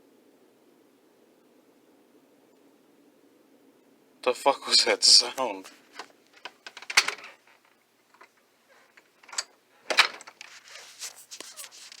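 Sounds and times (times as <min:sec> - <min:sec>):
soft rustling: 0:10.3 - 0:12.0.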